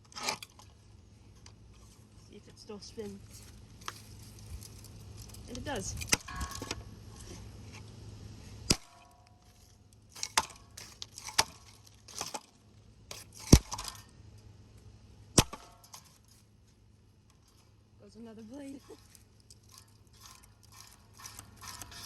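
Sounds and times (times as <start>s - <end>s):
ceiling fan low hum: 0.0s - 22.0s
hard blows knocking and cracking: 8.7s - 9.3s, 13.1s - 14.1s, 15.4s - 16.3s, 18.9s - 22.0s.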